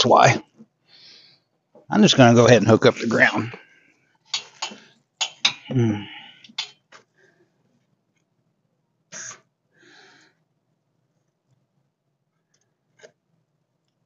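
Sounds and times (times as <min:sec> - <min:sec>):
person grunting: 0:05.7 - 0:06.3.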